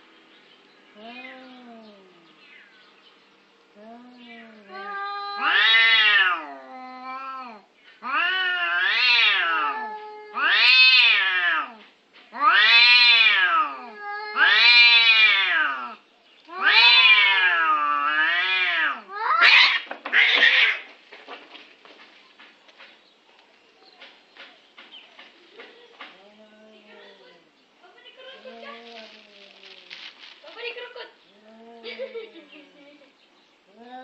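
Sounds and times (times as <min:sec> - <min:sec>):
cat meowing: 0:04.2 - 0:11.8, 0:12.4 - 0:20.9.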